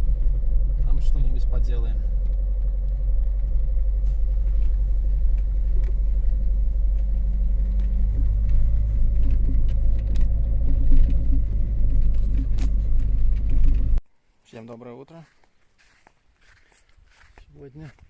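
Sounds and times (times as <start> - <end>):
car engine and road noise: 0.0 - 14.0.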